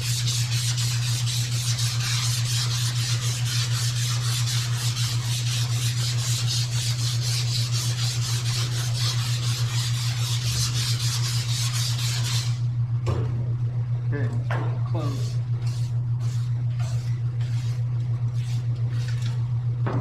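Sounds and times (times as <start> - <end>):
sanding block rasping: 0.0 - 12.6, 15.1 - 17.8
steady low hum: 0.0 - 20.0.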